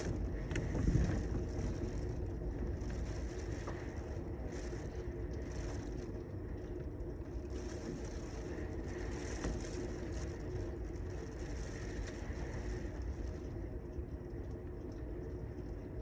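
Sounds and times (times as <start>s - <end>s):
rain hiss: 0.0s - 16.0s.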